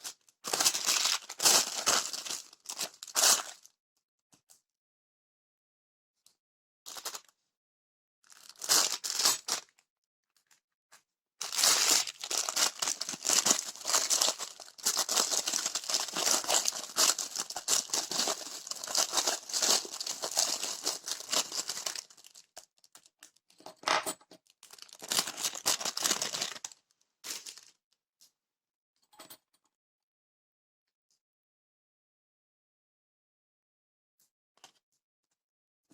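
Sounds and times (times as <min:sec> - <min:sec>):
packaging tearing and crinkling: 0:00.5 - 0:03.6, 0:08.3 - 0:09.6, 0:11.4 - 0:22.7, 0:24.6 - 0:27.7.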